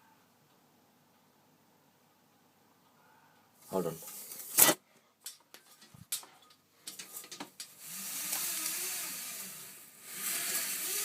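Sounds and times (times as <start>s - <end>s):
faint clicks and rustles: 5.2s - 8.7s.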